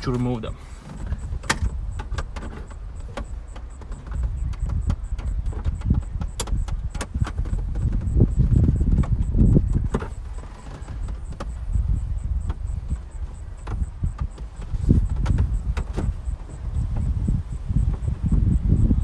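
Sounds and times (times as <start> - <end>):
rubbing and bumping: 0.0 - 19.0
plastic trim clicks and knocks: 0.9 - 10.1.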